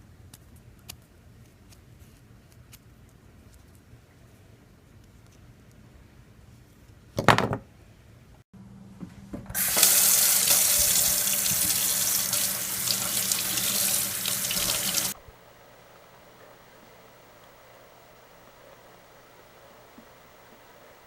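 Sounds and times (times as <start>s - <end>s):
tap water running into sink: 9.6s - 15.2s.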